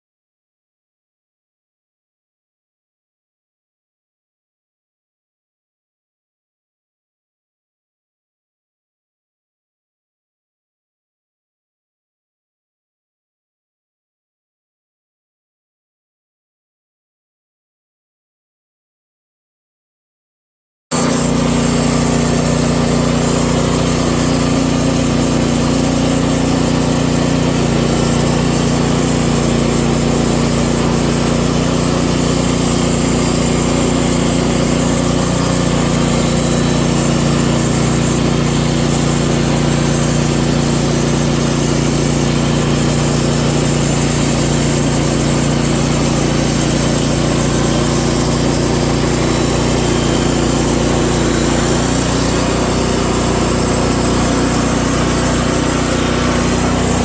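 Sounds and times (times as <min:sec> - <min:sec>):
sawmill engine droning: 0:20.9 - 0:57.0.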